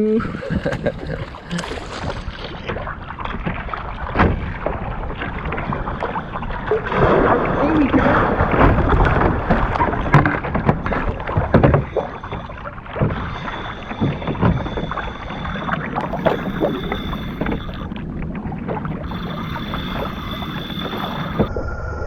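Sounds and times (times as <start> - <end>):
water washing: 0.0 - 21.5
wind: 0.0 - 22.0
paddle splashes and knocks: 1.2 - 16.3.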